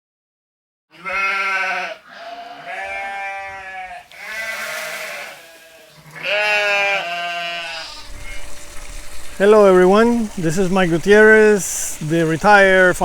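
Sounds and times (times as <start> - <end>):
farm animals bleating: 0.9 - 10.0.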